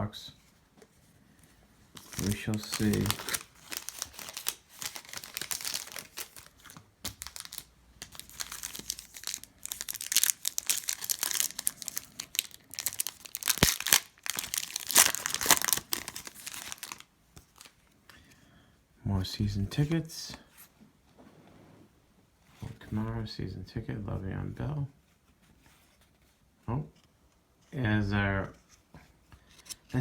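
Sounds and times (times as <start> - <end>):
foil wrapper crinkling and tearing: 2.0 - 17.8.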